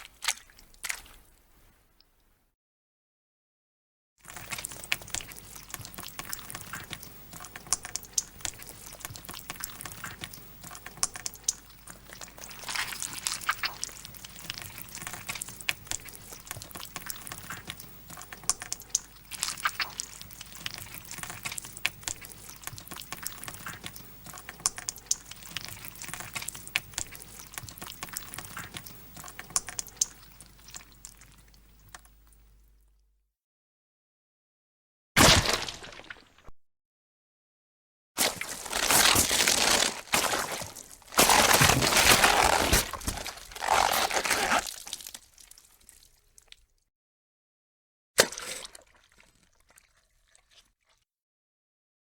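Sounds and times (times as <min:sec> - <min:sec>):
wet flesh squelching: 0:00.0 - 0:01.3, 0:04.3 - 0:18.3, 0:38.2 - 0:46.5.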